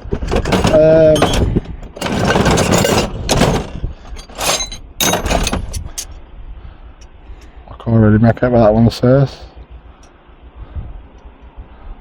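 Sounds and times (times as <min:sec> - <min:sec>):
scraping and rustling: 0:00.0 - 0:06.1
brass objects clinking: 0:00.5 - 0:06.1.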